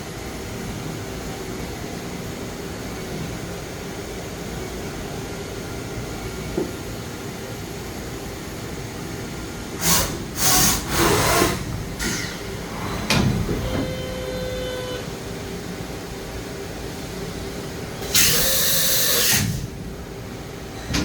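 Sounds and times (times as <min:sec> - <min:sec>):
machining center humming: 0:11.6 - 0:18.6
short steady whine: 0:12.0 - 0:15.2.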